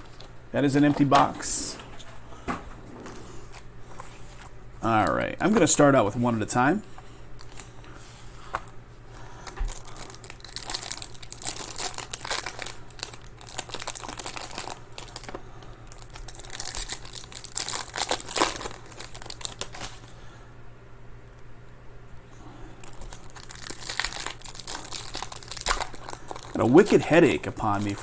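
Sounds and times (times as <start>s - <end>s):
plastic packaging tearing: 9.4s - 20.1s, 22.8s - 28.0s.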